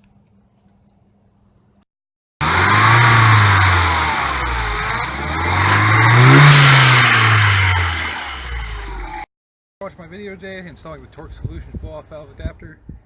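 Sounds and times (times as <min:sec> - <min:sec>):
car engine revving: 0:02.4 - 0:09.3.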